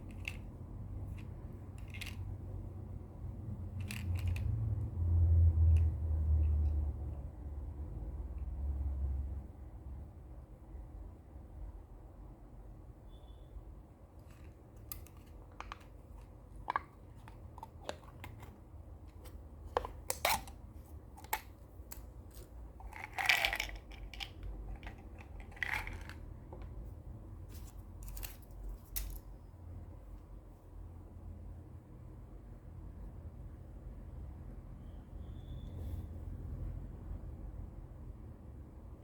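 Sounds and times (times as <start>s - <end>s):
rustling and scraping: 14.2s - 29.3s.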